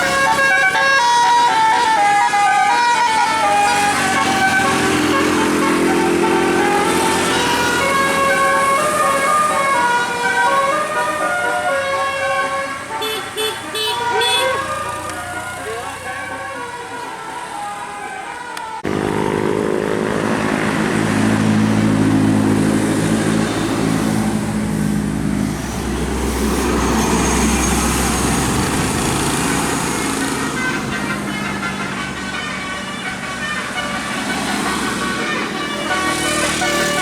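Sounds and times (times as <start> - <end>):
road traffic noise: 0.0 - 37.0
bus engine running: 18.8 - 37.0.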